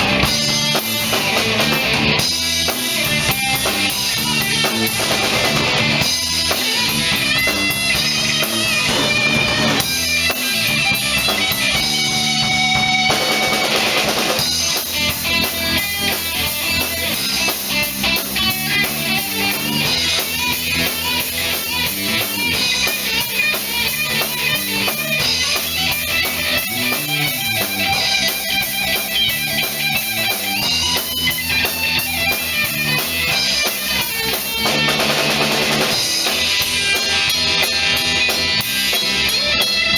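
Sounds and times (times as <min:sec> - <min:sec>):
drum kit beat: 0:00.0 - 0:39.9
guitar: 0:00.0 - 0:39.9.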